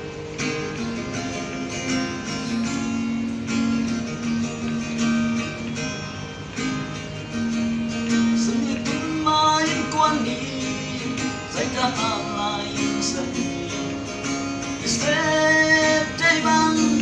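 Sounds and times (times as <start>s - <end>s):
acoustic guitar strumming: 0.0s - 17.0s
person singing: 8.0s - 17.0s.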